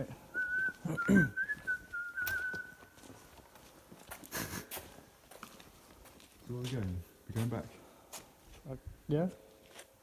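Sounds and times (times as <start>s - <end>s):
person whistling a long note: 0.3s - 2.9s.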